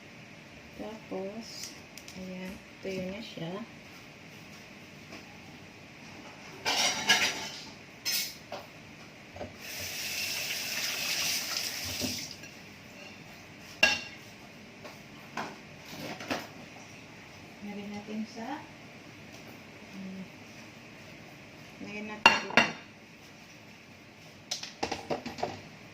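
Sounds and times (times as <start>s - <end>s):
dishes clattering: 6.6s - 8.4s
tap water running: 9.6s - 12.4s.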